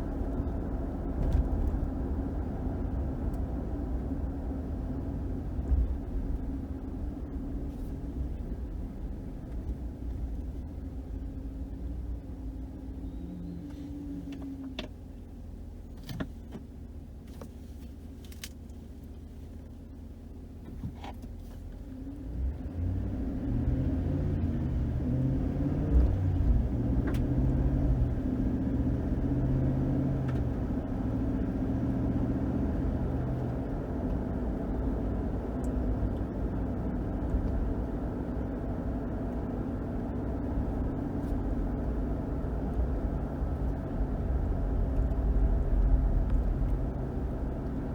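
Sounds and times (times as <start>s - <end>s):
road noise: 0.0s - 47.9s
truck engine accelerating: 22.2s - 47.9s.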